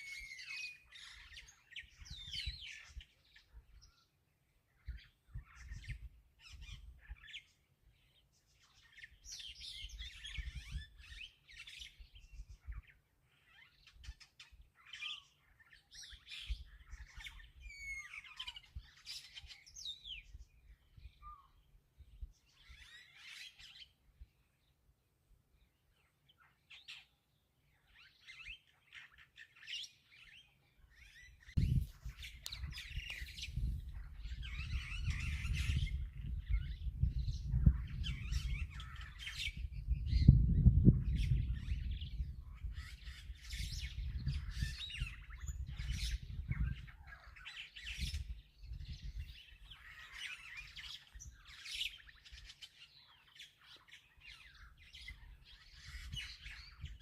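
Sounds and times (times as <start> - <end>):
birds chirping and squawking: 0.0 - 4.2, 4.8 - 21.6, 22.3 - 24.0, 26.0 - 57.0.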